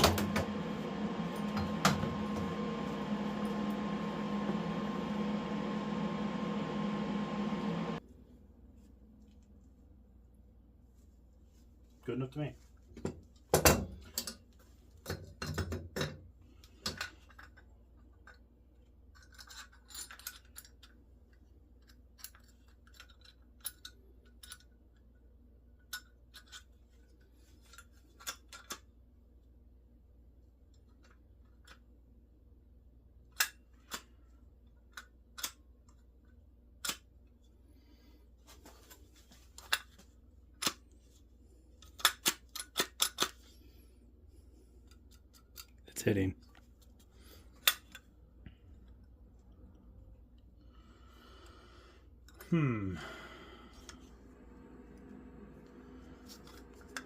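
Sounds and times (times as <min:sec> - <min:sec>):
small metal parts clicking: 0:19.1 - 0:21.0.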